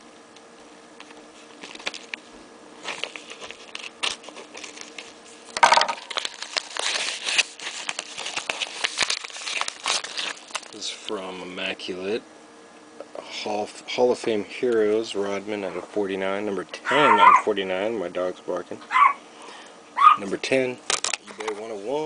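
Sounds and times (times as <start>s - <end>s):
packaging crinkling and rustling: 1.0s - 11.2s, 20.8s - 22.0s
packaging ripping: 1.4s - 2.2s, 2.8s - 10.8s.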